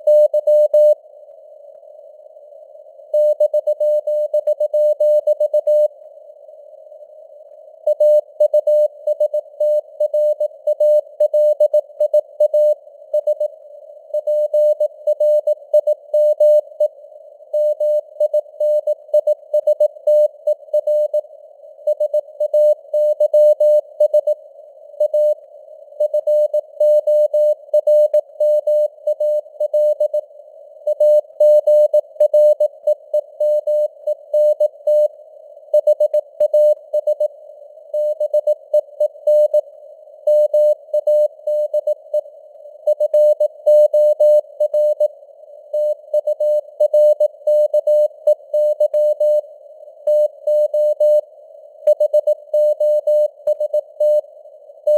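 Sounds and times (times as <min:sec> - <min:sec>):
morse code beeps: 0:45.8 - 0:49.4.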